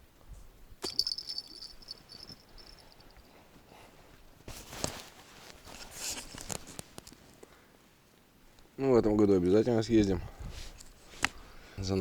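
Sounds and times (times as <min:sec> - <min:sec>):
insect chirring: 0:00.8 - 0:03.0.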